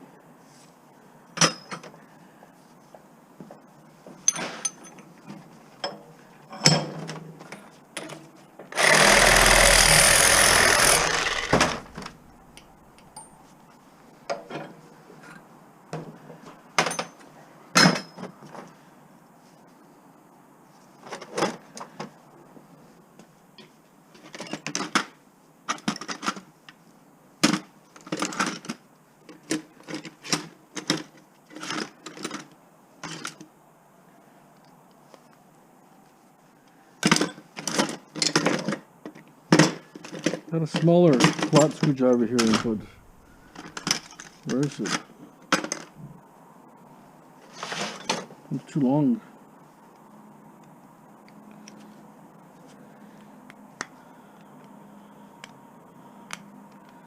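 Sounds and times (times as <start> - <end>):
power tool running: 8.7 - 12.5.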